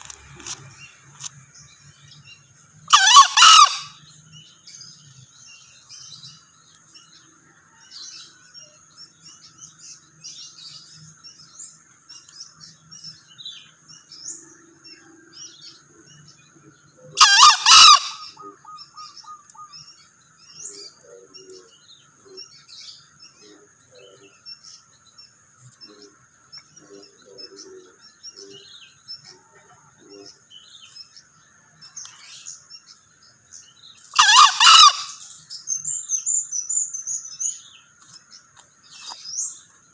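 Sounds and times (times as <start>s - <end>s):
junglefowl crowing: 2.9s - 4.0s, 17.1s - 19.8s, 34.1s - 35.3s.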